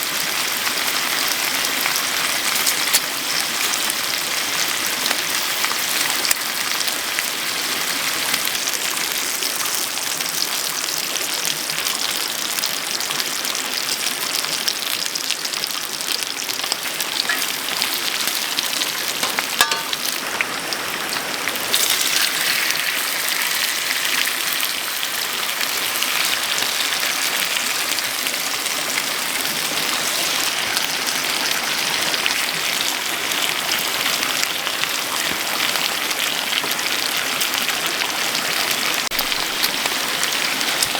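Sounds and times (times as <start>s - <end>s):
rain patter and hiss: 0.0s - 40.9s.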